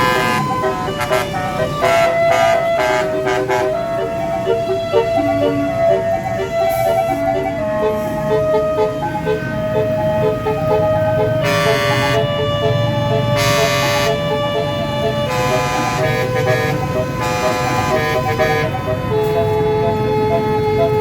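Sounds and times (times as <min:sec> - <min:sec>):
blaring horn blasts: 0:00.0 - 0:21.0
diesel engine running: 0:00.0 - 0:21.0
melody horn playing a tune: 0:00.0 - 0:21.0.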